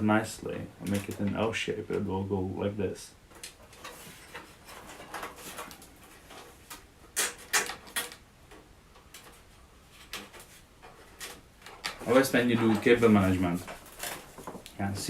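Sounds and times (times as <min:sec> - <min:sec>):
cable rustling and scraping: 0:00.0 - 0:02.1, 0:03.3 - 0:15.0.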